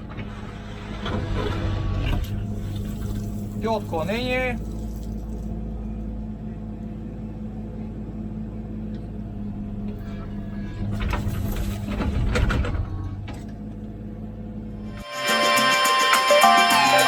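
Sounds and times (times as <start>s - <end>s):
hydraulic clattering: 0.0s - 5.6s, 9.6s - 14.0s
diesel engine running: 0.0s - 16.1s.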